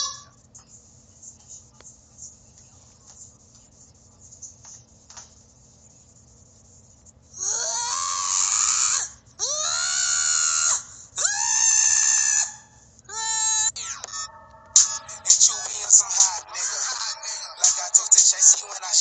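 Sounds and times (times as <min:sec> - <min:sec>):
high-pitched screams: 0:07.4 - 0:15.3.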